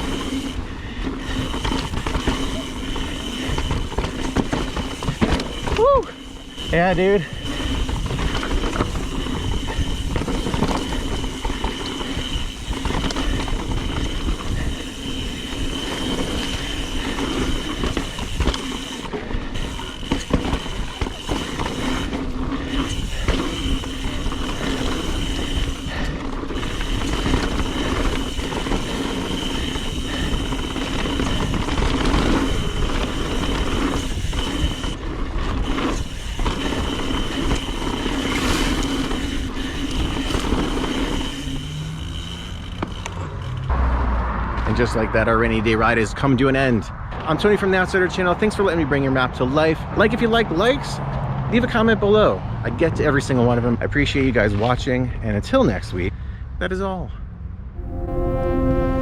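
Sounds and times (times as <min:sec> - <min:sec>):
bike frame and chain rattling: 0:00.0 - 0:43.7
bike tyres rolling over dirt: 0:00.0 - 0:43.7
steady buzz: 0:57.7 - 0:59.0.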